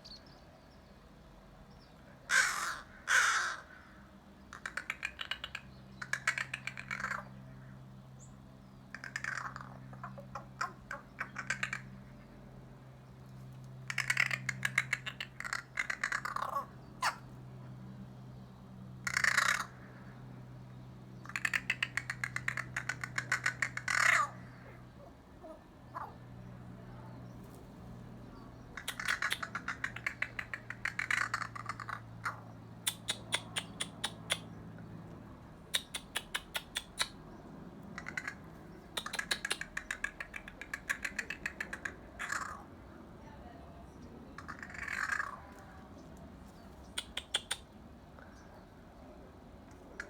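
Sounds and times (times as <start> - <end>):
crows cawing: 2.3 - 7.3, 8.9 - 12.2, 13.9 - 17.3, 19.0 - 20.2, 21.2 - 24.8, 28.8 - 32.4, 37.9 - 42.7, 44.4 - 45.4
crows rattle calls: 2.3 - 7.4, 8.9 - 12.3, 13.7 - 17.3, 19.0 - 20.1, 21.2 - 24.8, 28.7 - 34.5, 35.7 - 37.2, 37.8 - 42.7, 44.4 - 45.6, 46.8 - 47.7.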